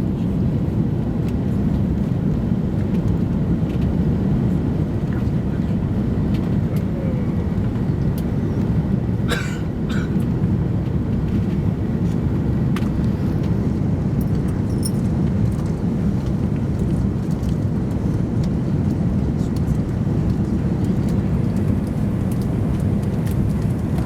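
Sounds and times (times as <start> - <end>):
airplane engines rumbling: 0.0 - 24.0.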